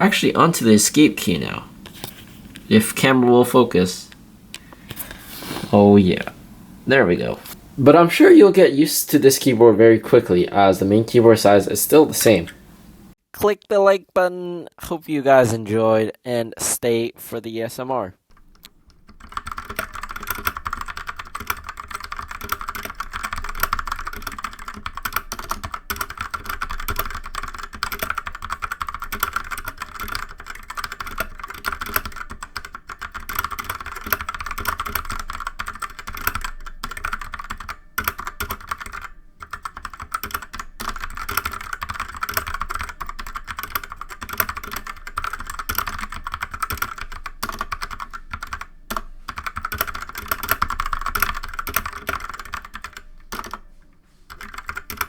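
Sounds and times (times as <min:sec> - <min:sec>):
mechanical keyboard typing: 0:18.3 - 0:53.7, 0:54.3 - 0:55.0.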